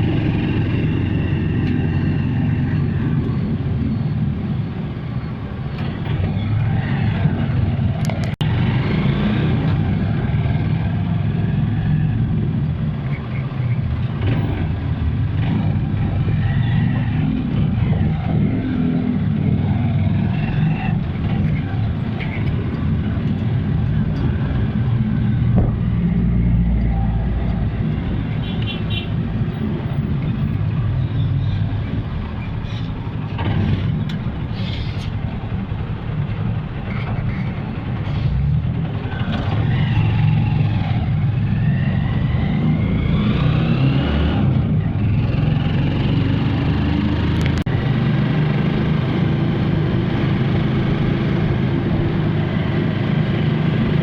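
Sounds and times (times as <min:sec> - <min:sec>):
vehicle engines running: 0:00.0 - 0:54.0
rising engine whine: 0:15.4 - 0:28.4, 0:38.6 - 0:54.0.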